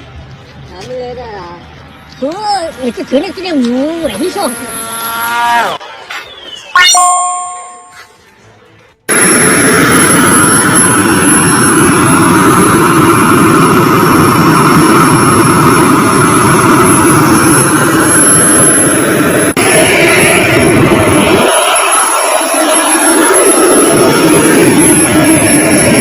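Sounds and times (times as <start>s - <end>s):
two-note electronic tone: 6.8s - 8.0s
model jet engine roaring with whine: 9.1s - 26.0s.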